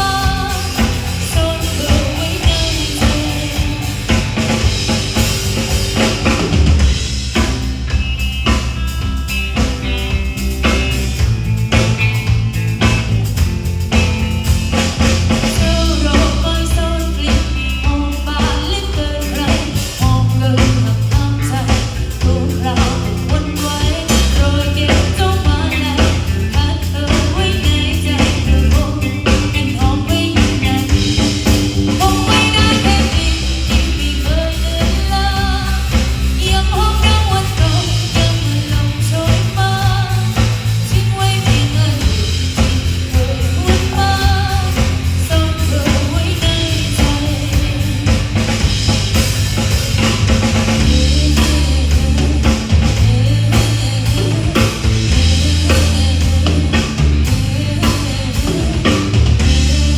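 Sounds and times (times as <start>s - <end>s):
person singing: 0.0s - 4.6s, 15.4s - 48.6s, 50.6s - 59.9s
bass guitar: 0.0s - 59.9s
drum kit: 0.0s - 59.9s
electric guitar: 0.0s - 59.9s.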